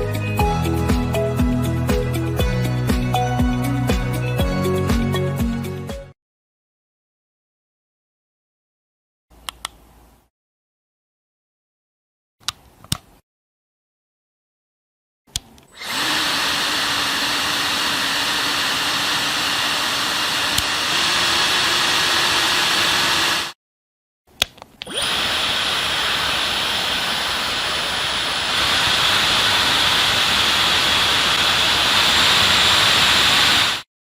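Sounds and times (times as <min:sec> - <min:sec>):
hair dryer blowing: 0:15.8 - 0:23.6, 0:24.8 - 0:33.9
hair dryer switch click: 0:20.5 - 0:20.7.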